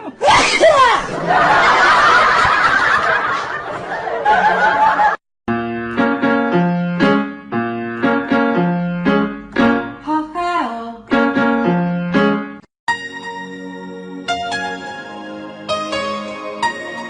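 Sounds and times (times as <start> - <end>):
piano-like keyboard music: 5.5 - 17.0.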